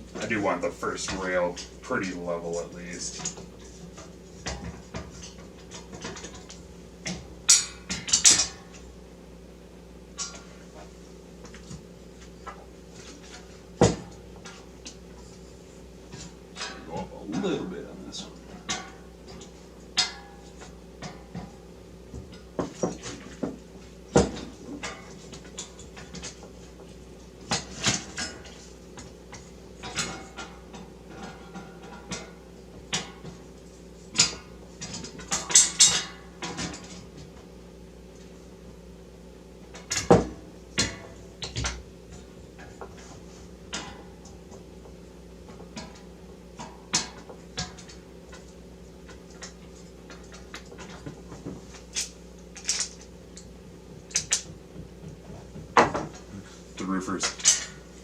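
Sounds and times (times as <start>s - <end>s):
metal parts clicking and clinking: 51.9s - 53.1s.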